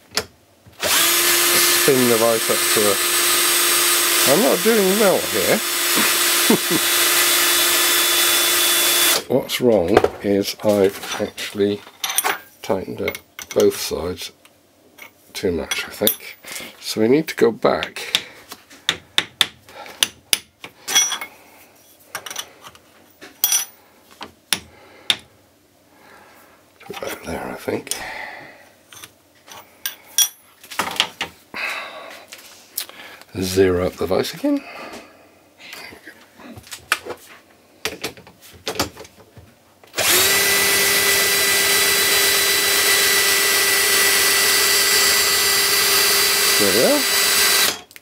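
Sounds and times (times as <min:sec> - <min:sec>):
power drill running: 0:00.8 - 0:09.3, 0:40.0 - 0:47.8.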